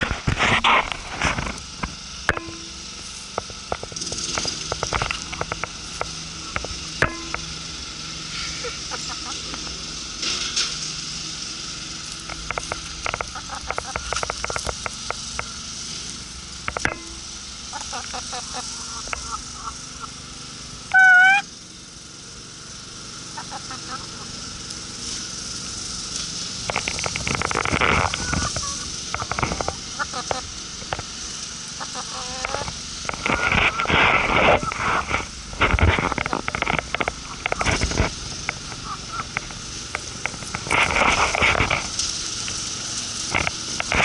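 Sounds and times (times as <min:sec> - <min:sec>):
chicks clucking and chirping: 0:08.5 - 0:09.7, 0:12.7 - 0:14.8, 0:17.2 - 0:20.2, 0:20.9 - 0:21.4, 0:23.2 - 0:24.5, 0:28.0 - 0:30.5, 0:31.7 - 0:32.8, 0:38.6 - 0:39.4
chickens pecking taps: 0:12.3 - 0:15.5, 0:31.8 - 0:33.9
chicken squawk: 0:17.7 - 0:20.1, 0:20.9 - 0:21.5, 0:23.4 - 0:24.4, 0:31.8 - 0:32.7, 0:38.8 - 0:39.3
chickens pecking at camera: 0:26.7 - 0:30.4, 0:31.8 - 0:39.5.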